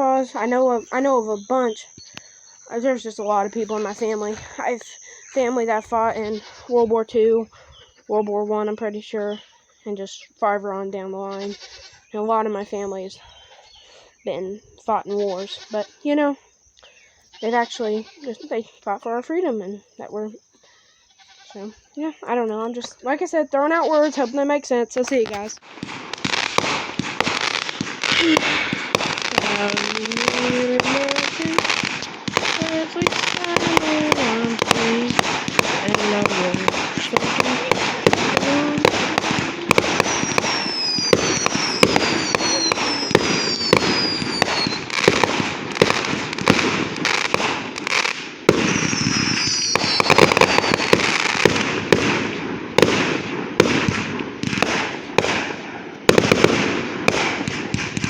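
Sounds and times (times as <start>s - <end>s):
fireworks crackling bangs and pops: 0.0s - 8.0s, 24.9s - 58.0s
fireworks whistles falling in pitch: 0.0s - 8.2s, 23.6s - 58.0s.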